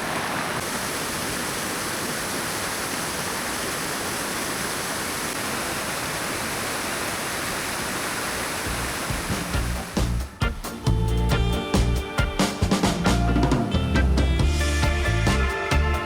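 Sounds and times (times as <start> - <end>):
waterfall and rapids rushing: 0.0 - 11.0
music with bass and drum beat: 9.3 - 16.0.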